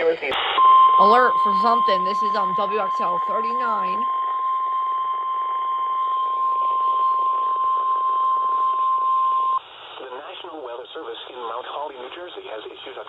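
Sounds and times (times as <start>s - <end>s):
high warning beep tone: 0.6s - 9.6s
radio static hiss: 9.6s - 13.0s.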